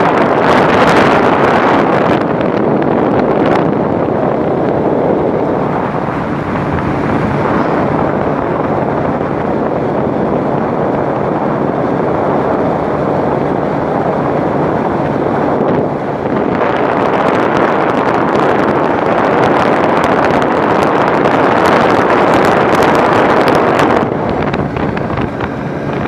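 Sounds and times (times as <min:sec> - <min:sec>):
wind buffeting microphone: 0:00.0 - 0:26.0.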